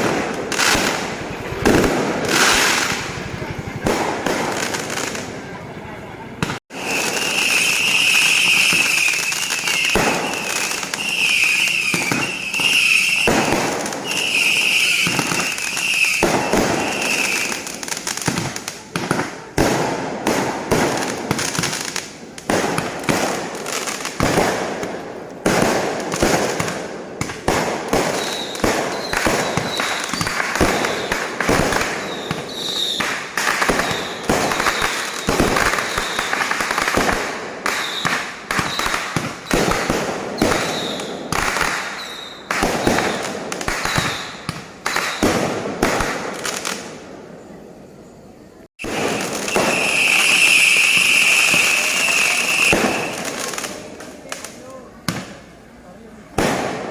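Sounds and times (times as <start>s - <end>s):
fireworks bangs and crackles: 0.0s - 56.9s
high whistling tone: 6.9s - 13.3s, 48.8s - 53.3s.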